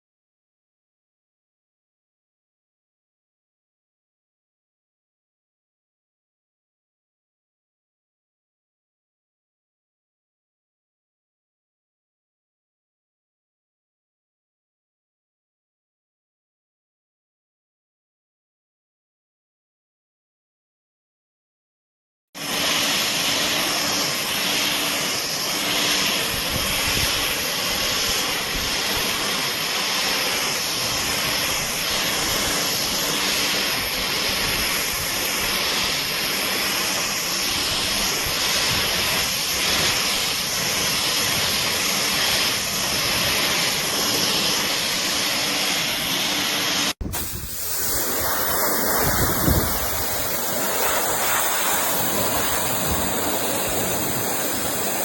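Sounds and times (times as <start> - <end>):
pressure washer spraying: 22.4 - 55.0.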